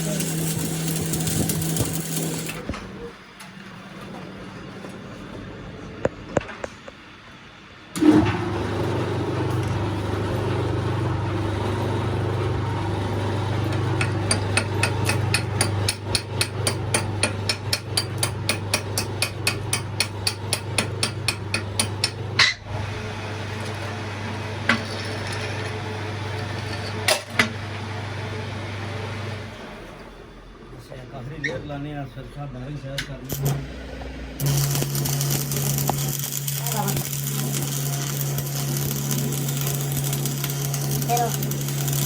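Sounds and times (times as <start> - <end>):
steady machine hum: 0.0 - 3.0, 33.3 - 42.0.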